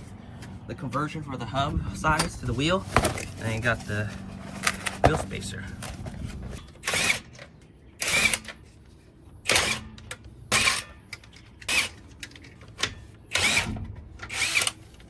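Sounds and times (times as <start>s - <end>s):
power tool whirring bursts: 8.0s - 8.5s, 13.3s - 14.8s.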